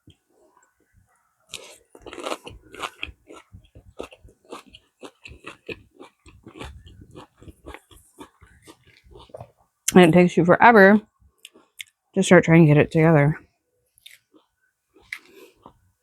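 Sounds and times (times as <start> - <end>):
person chewing crunchy food: 1.5 - 9.6, 11.4 - 12.0, 14.0 - 15.8.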